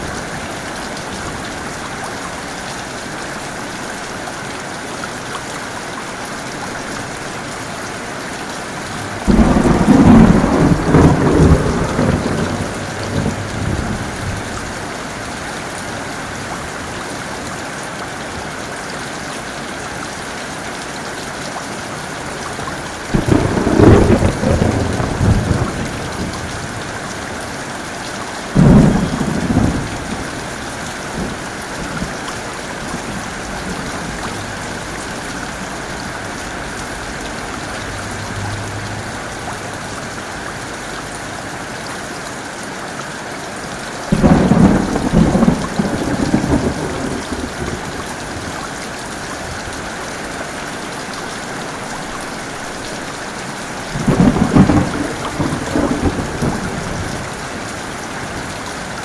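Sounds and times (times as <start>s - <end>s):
heavy rain: 0.0s - 59.0s
thunder cracks and rumbles: 8.8s - 15.0s, 23.1s - 27.4s, 28.6s - 40.9s, 44.1s - 48.4s, 53.8s - 57.8s.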